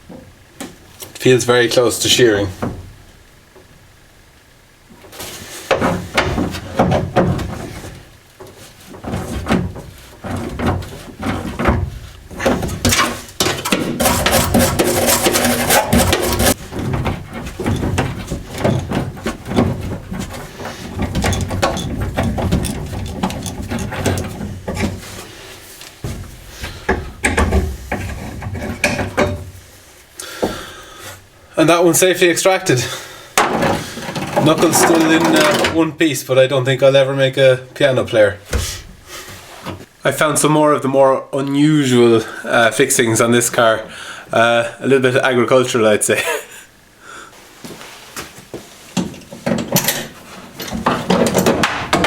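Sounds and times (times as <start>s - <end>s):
steady rasping: 5.1s - 31.3s
metallic clicks and knocks: 9.0s - 25.1s, 26.0s - 29.5s.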